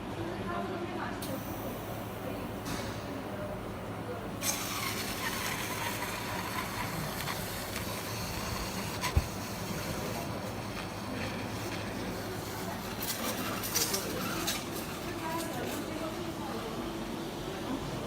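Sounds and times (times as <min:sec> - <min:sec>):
welding hiss: 0:04.4 - 0:14.9.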